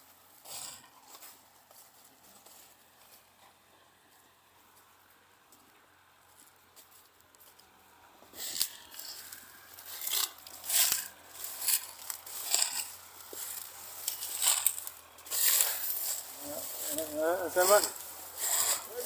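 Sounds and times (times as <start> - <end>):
dry rustling and crackling: 8.4 - 19.0.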